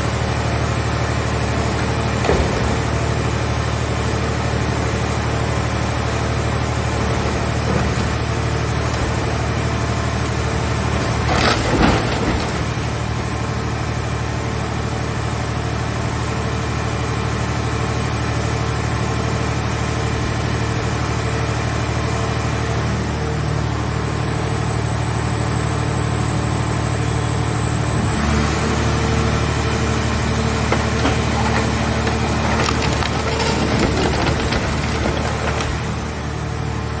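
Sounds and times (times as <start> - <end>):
hydraulic power unit running: 0.0 - 15.6, 28.8 - 37.0
sheet metal crackling as crushed: 30.5 - 36.3.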